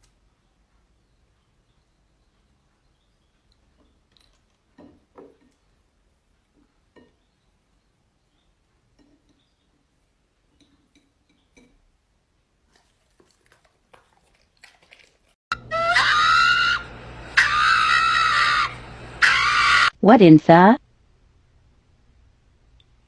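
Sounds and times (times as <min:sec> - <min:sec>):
loud high-pitched scream: 0:15.5 - 0:20.0.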